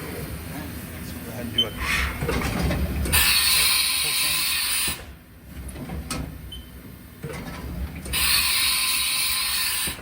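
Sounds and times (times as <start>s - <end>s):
machine mechanisms clicking and clunking: 1.6s - 3.4s, 4.8s - 10.0s
loud hiss of air: 3.2s - 5.1s, 8.2s - 10.0s.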